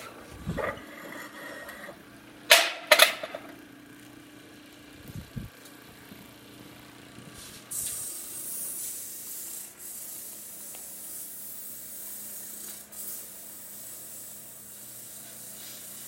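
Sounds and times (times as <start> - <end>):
machine low hum: 0.0 - 8.4.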